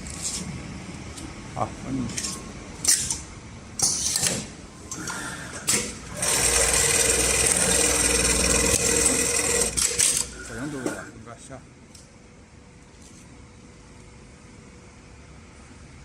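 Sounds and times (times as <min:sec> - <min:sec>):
sewing machine stitching: 0:05.0 - 0:11.1.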